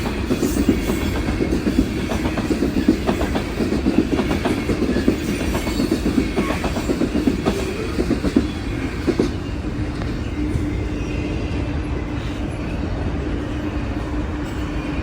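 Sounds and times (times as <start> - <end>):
train wheels clattering over rails: 0.0 - 11.0.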